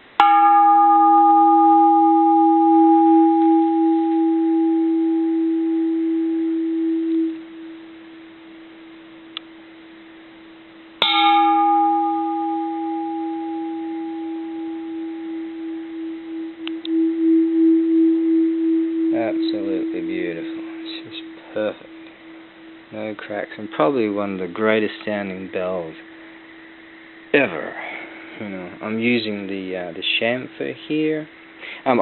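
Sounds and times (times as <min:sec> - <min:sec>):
temple bell ringing: 0:00.2 - 0:07.3, 0:11.0 - 0:22.2.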